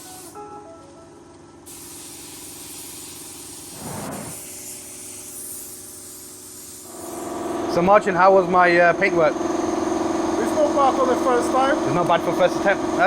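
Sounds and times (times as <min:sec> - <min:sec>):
paint spray gun hissing: 0:00.0 - 0:00.4, 0:01.7 - 0:07.6.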